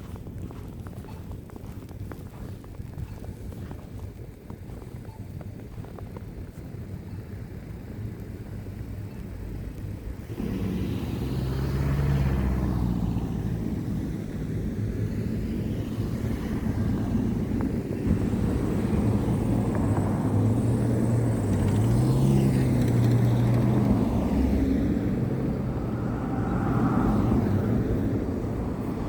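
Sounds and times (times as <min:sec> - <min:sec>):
vehicle engine passing: 0:10.2 - 0:17.2, 0:18.0 - 0:29.0.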